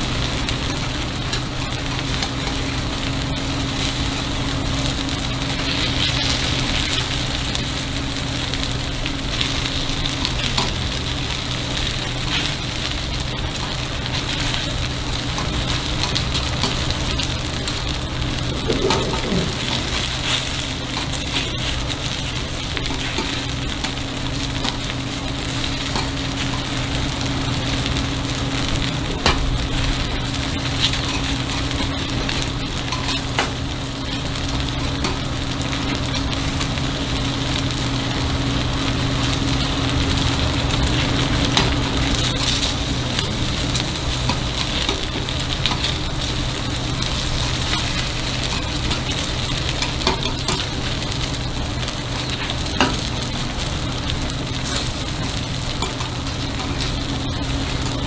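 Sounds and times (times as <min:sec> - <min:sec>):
batter sizzling in a pan: 0:00.0 - 0:58.0
steady low hum: 0:12.5 - 0:58.0.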